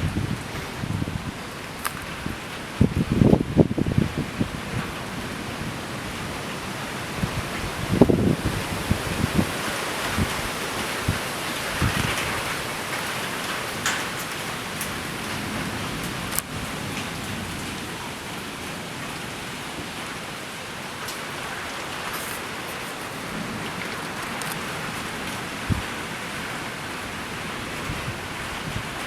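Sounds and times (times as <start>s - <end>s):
steady rain: 0.0s - 29.0s
sharp taps of raindrops: 1.6s - 2.5s, 11.0s - 19.2s, 21.0s - 25.9s.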